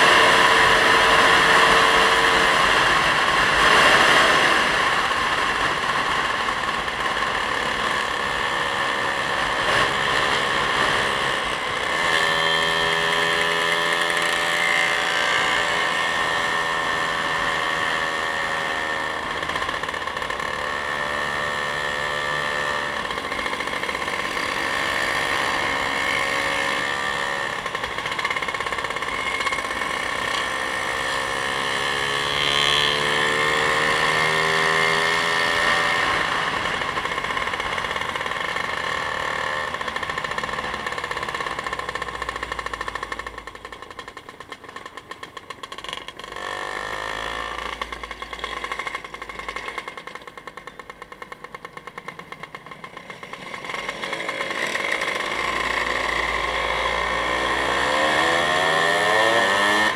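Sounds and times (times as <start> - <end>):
wind and road noise: 0.0 - 44.9.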